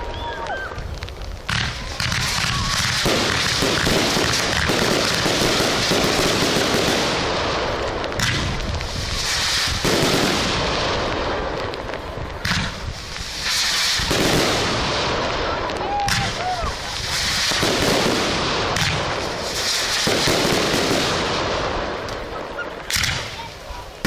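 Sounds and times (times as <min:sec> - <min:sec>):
fireworks bursting and crackling: 0:00.0 - 0:24.0
sharp firework bangs: 0:00.0 - 0:24.0.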